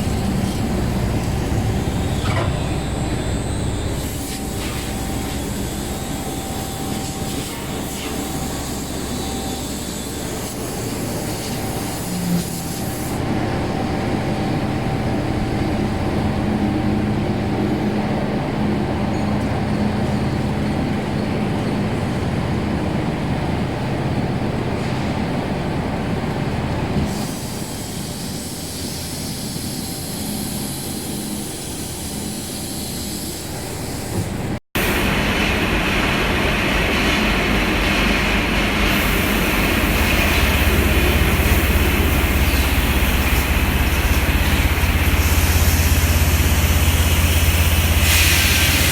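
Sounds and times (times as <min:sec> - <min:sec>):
machine rumbling with hum: 0:00.0 - 0:12.4, 0:34.2 - 0:48.9.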